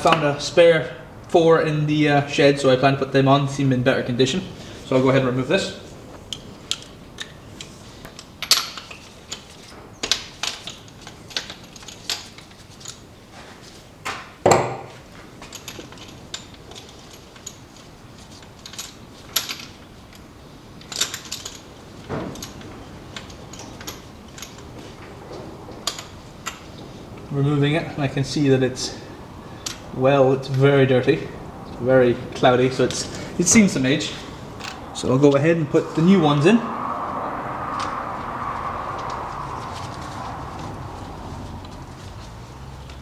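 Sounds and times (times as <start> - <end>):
tools and metal parts clinking: 6.3 - 13.0, 15.4 - 25.2.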